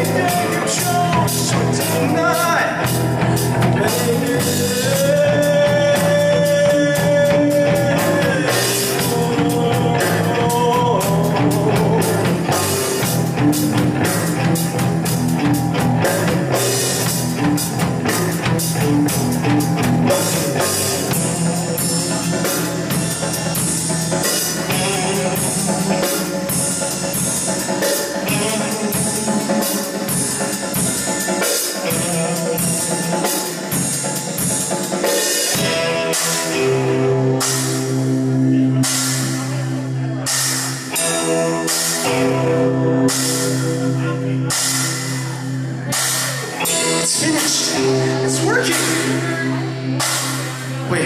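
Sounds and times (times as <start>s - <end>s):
busy drum kit: 0.0s - 51.0s
rock music: 0.0s - 51.0s.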